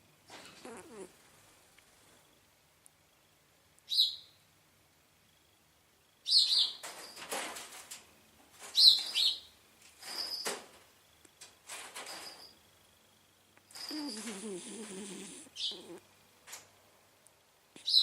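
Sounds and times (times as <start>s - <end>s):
small animal chirping: 13.8s - 16.0s, 17.8s - 18.0s
breathy rasping sounds: 13.9s - 16.0s.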